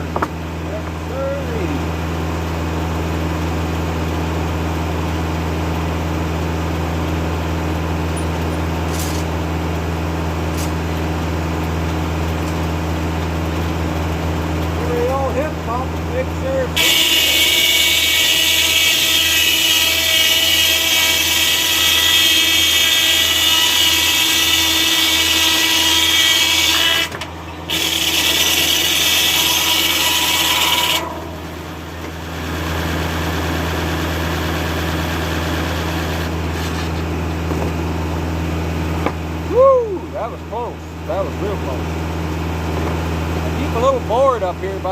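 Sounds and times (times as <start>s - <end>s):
tractor engine running: 0.0s - 16.8s
circular saw blade ripping log: 16.8s - 31.3s.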